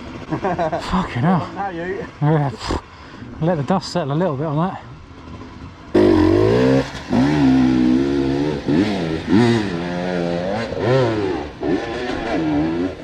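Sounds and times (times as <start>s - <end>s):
dirt bike engine revving: 5.9s - 13.0s.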